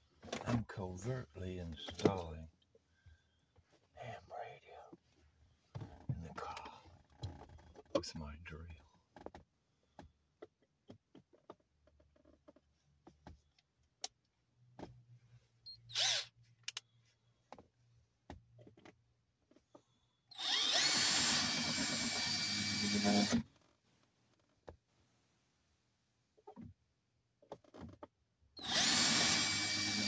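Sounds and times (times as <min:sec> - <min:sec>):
power drill whine: 0:15.9 - 0:16.3, 0:20.3 - 0:23.4, 0:28.6 - 0:30.0.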